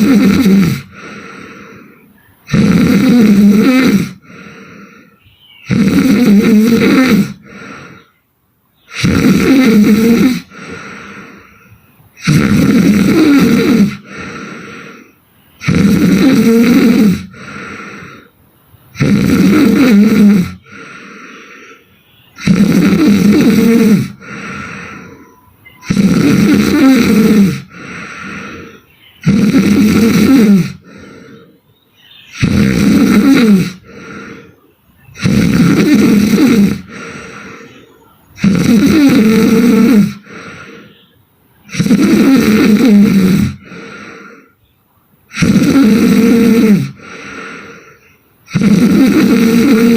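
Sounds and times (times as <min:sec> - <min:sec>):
woman snoring: 0:00.0 - 0:08.1, 0:08.8 - 0:31.5, 0:32.3 - 0:44.6, 0:45.3 - 0:49.9
soft breath: 0:00.8 - 0:02.5, 0:04.1 - 0:05.5, 0:10.4 - 0:12.2, 0:13.9 - 0:15.6, 0:20.6 - 0:22.4, 0:24.1 - 0:26.0, 0:27.6 - 0:29.2, 0:30.6 - 0:32.4, 0:33.7 - 0:35.3, 0:36.8 - 0:38.2, 0:40.1 - 0:41.2, 0:46.9 - 0:48.3.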